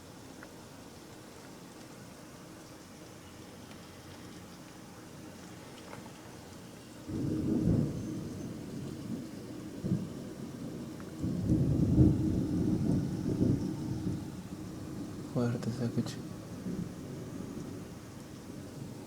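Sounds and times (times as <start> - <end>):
steady rain: 0.0 - 19.0
thunder rumbling: 7.1 - 19.0.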